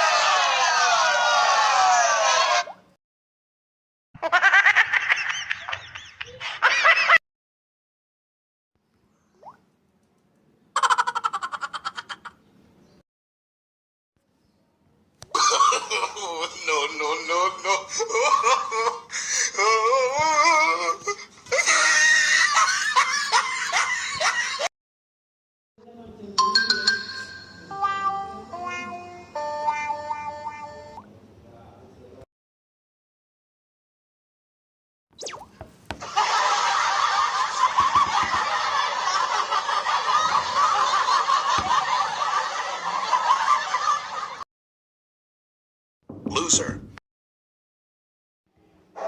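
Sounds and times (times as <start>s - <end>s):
shrill laughing-screaming: 0.0s - 2.7s, 19.1s - 24.6s
people laughing: 4.2s - 7.2s, 15.3s - 24.7s, 36.0s - 44.4s.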